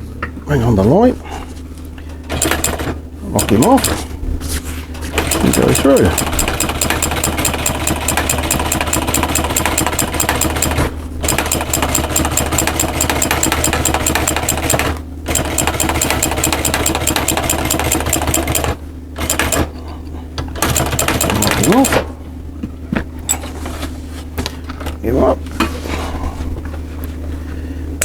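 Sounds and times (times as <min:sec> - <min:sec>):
sewing machine stitching: 0:02.3 - 0:04.1, 0:05.1 - 0:19.7, 0:20.6 - 0:22.0.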